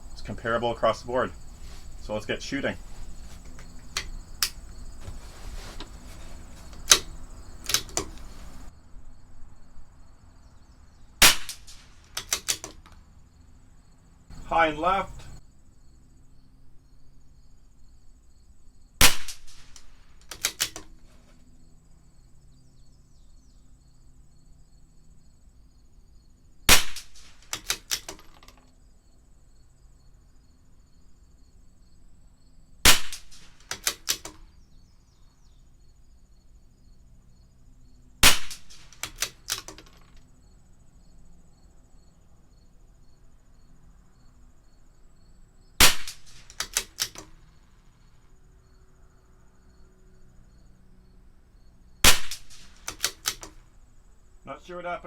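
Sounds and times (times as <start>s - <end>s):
rifle bolt clicking: 6.6s - 8.3s, 11.4s - 13.0s, 19.4s - 21.0s, 27.4s - 28.6s, 33.1s - 34.4s, 38.3s - 40.2s, 46.0s - 47.4s, 52.2s - 53.6s
rifle shots: 6.8s - 8.3s, 11.2s - 12.8s, 19.0s - 20.8s, 26.7s - 28.4s, 32.8s - 34.4s, 38.2s - 40.0s, 45.8s - 47.3s, 52.0s - 53.6s.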